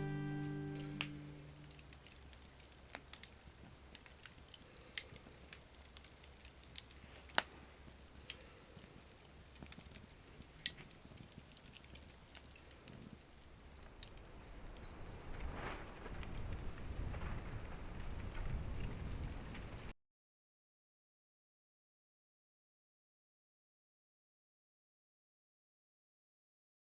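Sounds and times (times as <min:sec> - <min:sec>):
campfire crackling and popping: 0:00.0 - 0:19.9.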